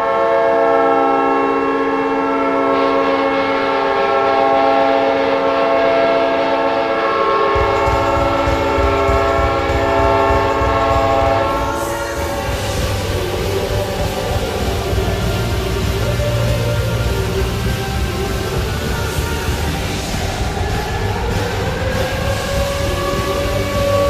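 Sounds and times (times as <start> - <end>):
goal horn blaring: 0.0 - 24.0
low steady music beat: 7.6 - 24.0.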